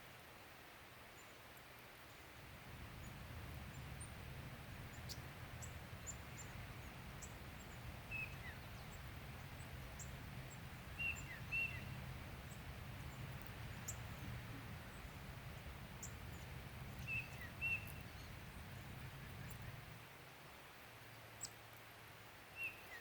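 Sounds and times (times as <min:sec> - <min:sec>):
bird ticks: 0:04.9 - 0:14.3, 0:15.9 - 0:19.8
bird chirps: 0:04.9 - 0:15.2, 0:15.9 - 0:19.8, 0:22.6 - 0:23.0.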